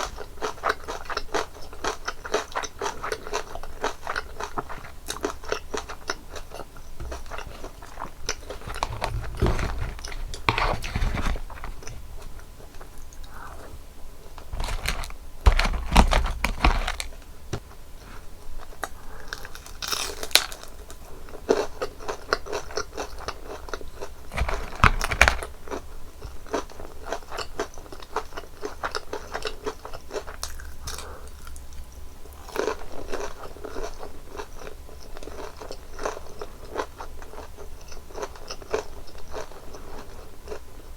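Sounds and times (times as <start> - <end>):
crunching and chewing fried food: 0.0 - 13.7, 14.3 - 40.9.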